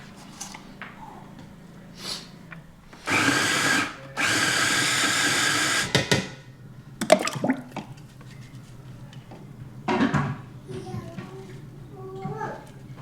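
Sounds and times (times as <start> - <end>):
small electric motor running: 3.0 - 6.0.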